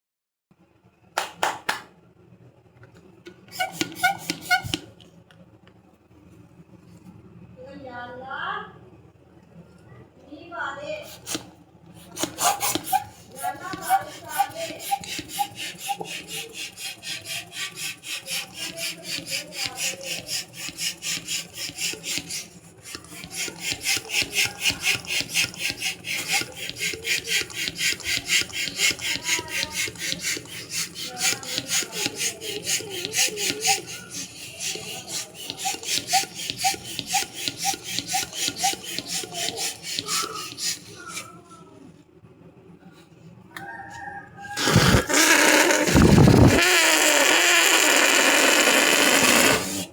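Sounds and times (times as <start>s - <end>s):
hand balloon pump strokes: 3.3s - 5.0s, 11.0s - 41.6s, 44.6s - 49.9s.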